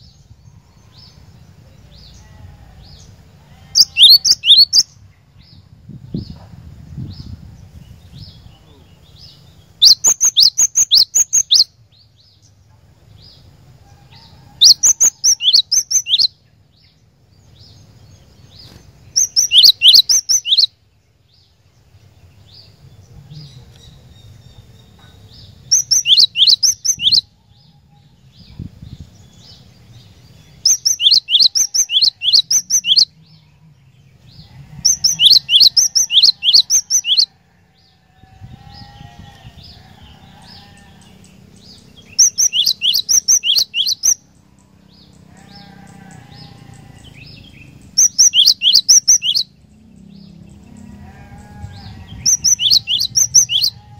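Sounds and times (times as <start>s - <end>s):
bird singing sharp high notes: 18.7s - 20.7s, 30.6s - 33.1s, 42.0s - 44.2s.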